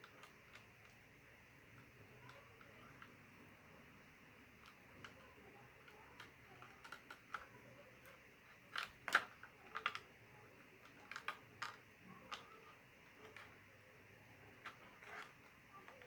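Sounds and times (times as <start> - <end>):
small plastic items clicking: 4.6 - 10.1, 10.7 - 13.6, 14.5 - 16.0.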